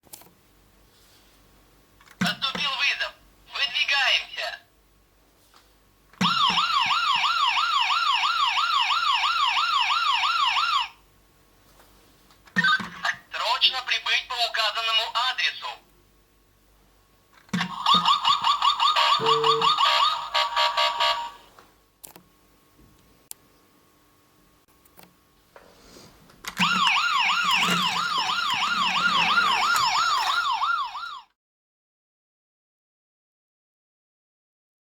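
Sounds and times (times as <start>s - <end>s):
toy ambulance siren warbling: 6.2s - 11.0s, 17.7s - 21.4s, 26.6s - 31.3s.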